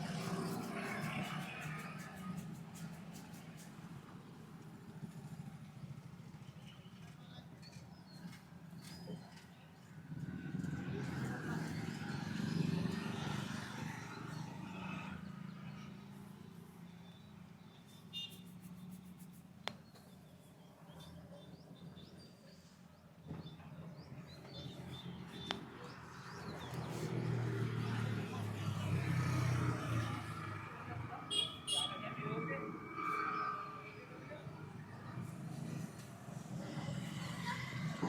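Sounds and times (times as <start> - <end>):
birds chirping: 11.0 - 29.1, 31.2 - 35.6.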